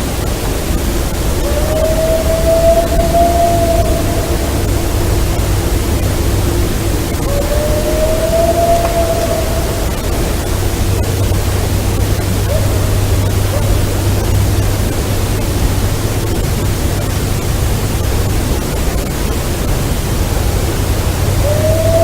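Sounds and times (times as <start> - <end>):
heavy hiss with low hum: 0.0 - 22.0
rising tonal call: 0.7 - 14.7, 21.0 - 22.0.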